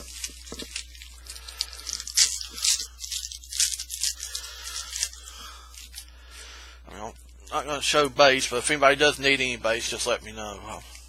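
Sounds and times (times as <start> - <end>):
packaging tearing and crinkling: 0.0 - 6.1.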